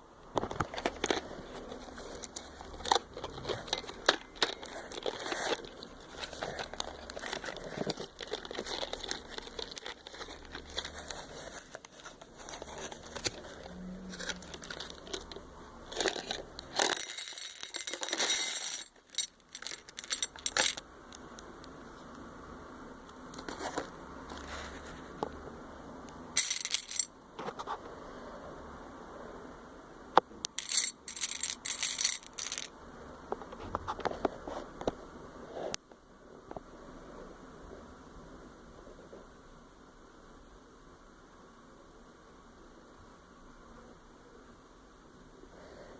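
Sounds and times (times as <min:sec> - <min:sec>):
plastic packaging crinkling: 0:01.9 - 0:13.5, 0:14.2 - 0:20.8
small clicks and rattles: 0:14.2 - 0:20.8, 0:26.4 - 0:27.1, 0:30.6 - 0:32.7.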